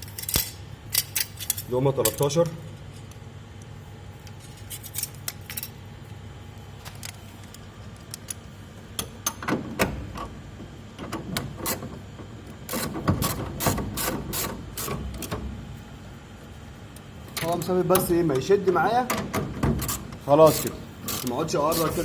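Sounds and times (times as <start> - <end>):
wrench clicking and clinking: 0.0 - 2.2.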